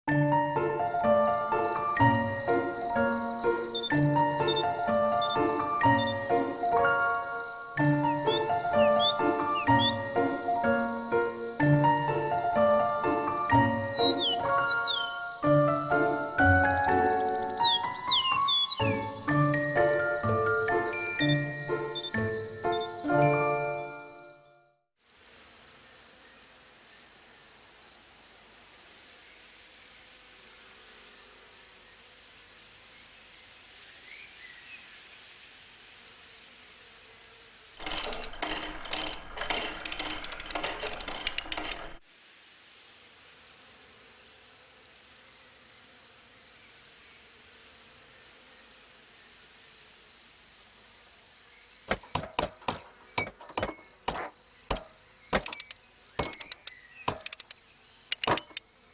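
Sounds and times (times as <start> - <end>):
insect trill: 0.6 - 42.0, 42.8 - 58.9
rapid clicking and clattering: 37.8 - 42.0, 51.9 - 57.5, 58.1 - 58.6.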